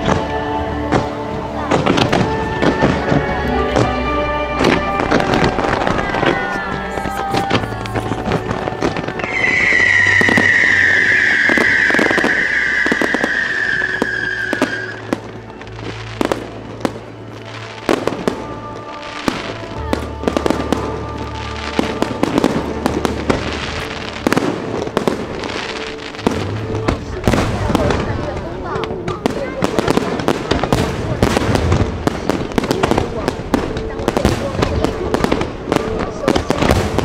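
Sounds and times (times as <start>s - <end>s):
background music: 0.0s - 37.0s
firework bangs and crackles: 0.0s - 37.0s
whistling firework: 8.8s - 15.4s.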